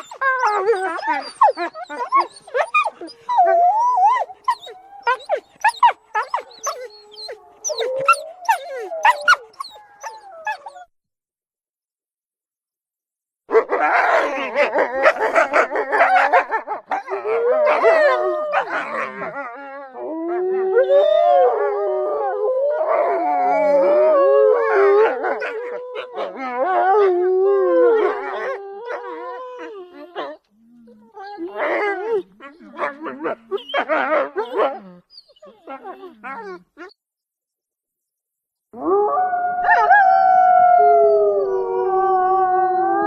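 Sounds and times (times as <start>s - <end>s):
wolves howling: 0.0s - 10.8s, 13.6s - 36.6s, 38.8s - 43.0s
wolves yipping and barking: 0.0s - 10.8s, 13.5s - 19.5s, 24.7s - 27.0s, 31.1s - 36.9s.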